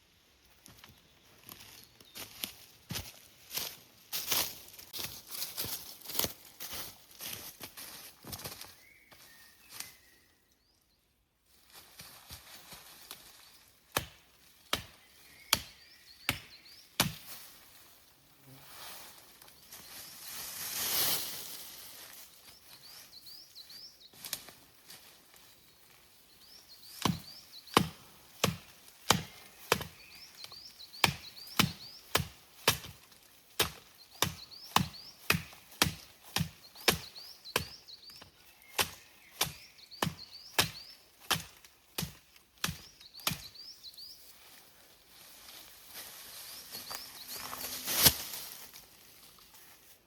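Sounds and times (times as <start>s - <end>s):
blade chopping wood: 13.9s - 17.3s, 27.0s - 30.1s, 33.6s - 37.8s.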